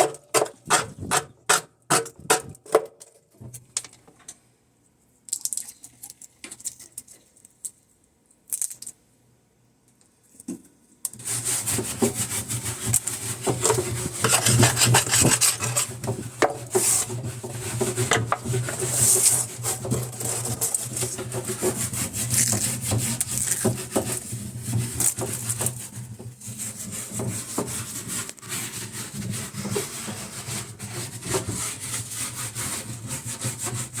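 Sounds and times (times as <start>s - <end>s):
rubbing and scraping strokes: 11.2s - 34.0s.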